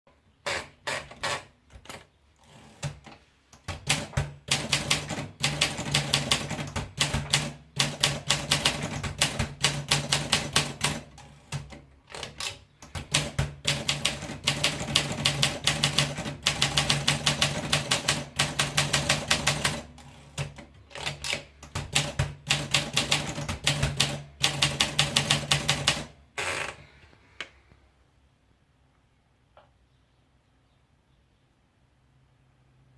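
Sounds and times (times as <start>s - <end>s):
typewriter keystrokes: 2.8s - 26.1s.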